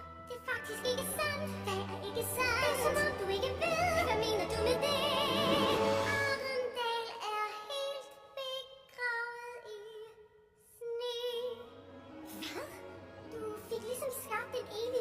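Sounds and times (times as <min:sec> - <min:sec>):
musical accompaniment: 0:00.0 - 0:06.8, 0:11.5 - 0:15.0
women singing a duet: 0:00.3 - 0:06.8.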